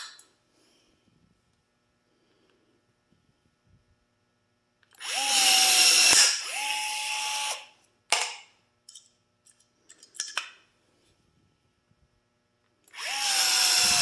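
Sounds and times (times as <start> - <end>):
rivet tool motor running: 13.0 - 14.0.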